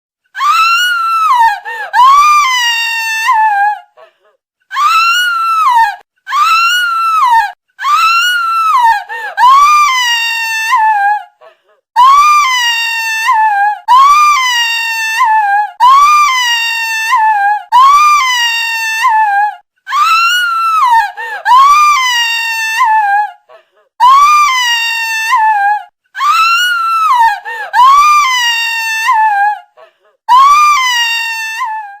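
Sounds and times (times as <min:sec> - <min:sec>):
woman screaming: 0:00.4 - 0:03.8, 0:04.7 - 0:11.2, 0:24.0 - 0:29.6, 0:30.3 - 0:32.0.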